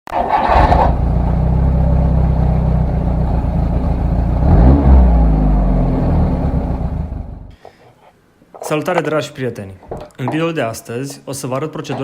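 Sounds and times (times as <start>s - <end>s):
car engine running and revving: 0.6s - 7.5s.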